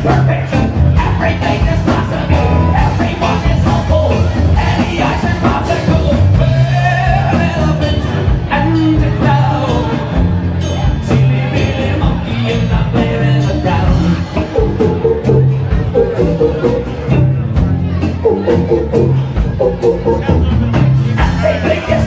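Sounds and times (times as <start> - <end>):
bass line: 0.0 - 22.0
live band playing: 0.0 - 22.0.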